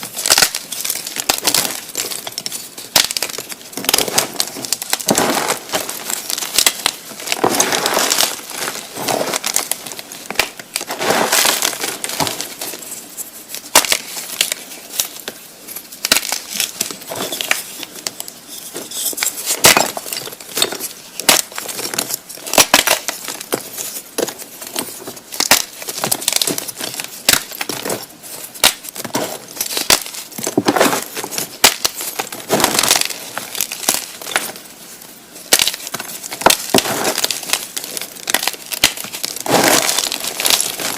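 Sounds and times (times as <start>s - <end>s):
chalk blocks being crushed: 0.0s - 40.9s.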